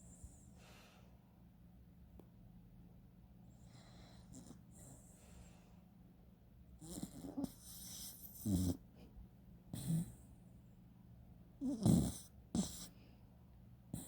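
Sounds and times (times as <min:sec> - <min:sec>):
dog snoring: 0:03.6 - 0:05.2, 0:06.8 - 0:08.9, 0:09.7 - 0:10.3, 0:11.6 - 0:12.9.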